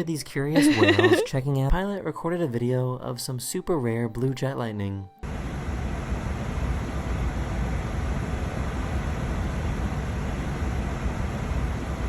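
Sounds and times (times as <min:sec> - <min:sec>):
aircraft cockpit drone: 0:05.2 - 0:12.0.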